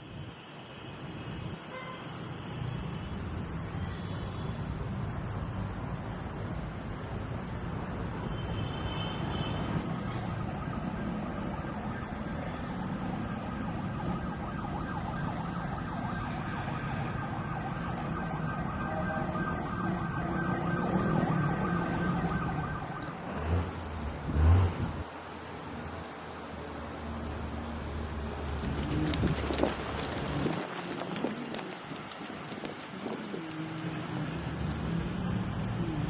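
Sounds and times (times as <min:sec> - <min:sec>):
city street traffic: 0:00.0 - 0:36.0
distant siren: 0:09.8 - 0:23.4.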